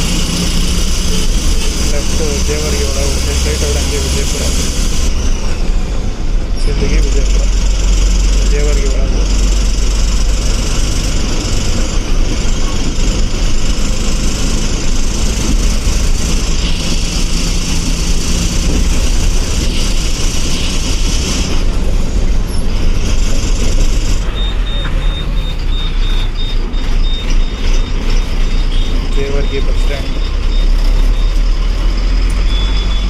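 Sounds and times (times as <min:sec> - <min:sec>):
bus diesel engine running: 0:00.0 - 0:33.0
road and wind noise: 0:00.0 - 0:33.0
high-pitched intermittent beep: 0:24.2 - 0:33.0.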